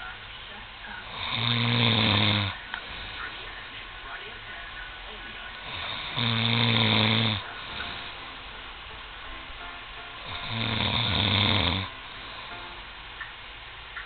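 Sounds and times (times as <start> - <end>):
quiet breathing: 0.0 - 8.7, 10.2 - 12.9
man snoring: 1.1 - 3.2, 5.6 - 8.2, 10.2 - 12.5.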